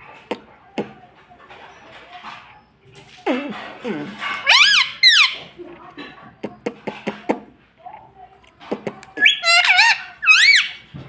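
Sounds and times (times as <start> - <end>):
parrot shrill calls: 4.4 - 5.4, 9.2 - 10.9.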